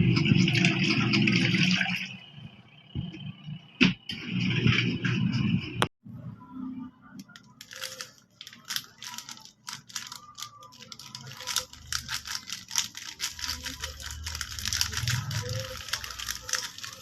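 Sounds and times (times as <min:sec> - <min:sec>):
plastic packaging crinkling: 0:07.2 - 0:17.0.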